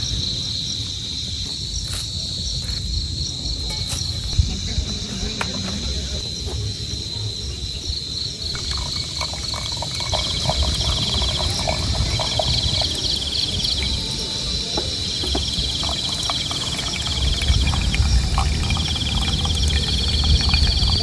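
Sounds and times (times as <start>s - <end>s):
crickets shrilling: 0.0s - 21.0s
insects pulsing trills: 0.0s - 21.0s
low rumble: 17.0s - 21.0s.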